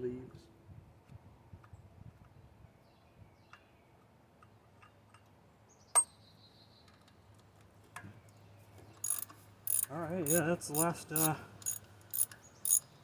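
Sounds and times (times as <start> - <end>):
faint tool ticks: 9.0 - 12.8
sharp metallic clink: 9.0 - 12.9.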